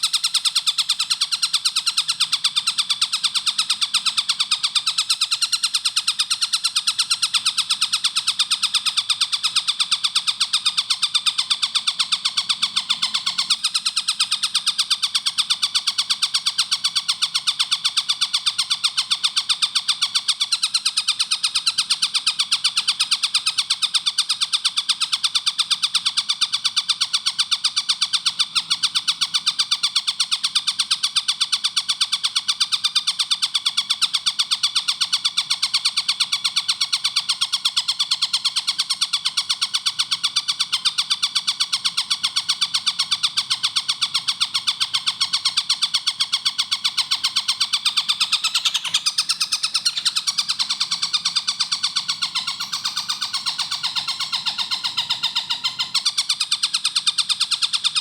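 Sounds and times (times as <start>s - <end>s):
kingfisher calling: 44.5s - 58.0s.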